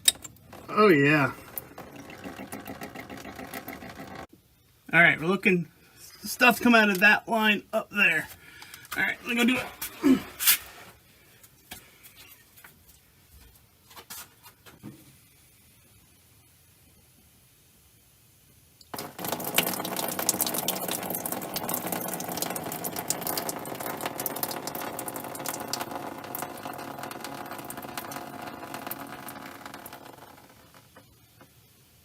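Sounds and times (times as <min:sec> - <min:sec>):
fuel hissing and spattering from valve: 0:00.0 - 0:04.3, 0:18.8 - 0:31.4.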